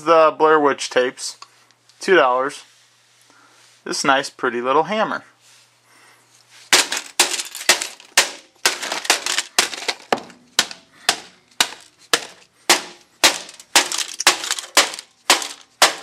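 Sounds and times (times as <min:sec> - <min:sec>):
hammer blows: 0:06.7 - 0:16.0
brittle items cracking: 0:06.8 - 0:16.0.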